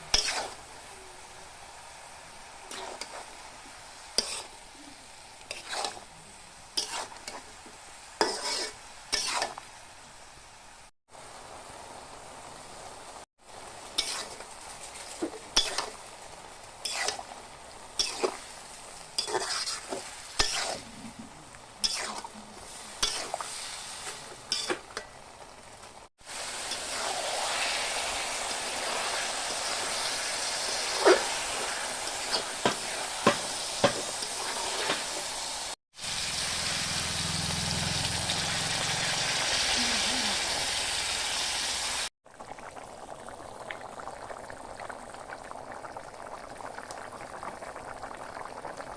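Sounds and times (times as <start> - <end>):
food sizzling in oil: 0.0 - 48.9
metal spatula scraping pan: 0.2 - 0.6, 2.7 - 3.3, 4.2 - 4.6, 5.5 - 6.1, 6.8 - 7.5, 8.2 - 9.6, 16.8 - 17.2, 18.0 - 18.4, 19.2 - 20.9, 21.8 - 22.3, 23.0 - 24.8, 30.6 - 35.3.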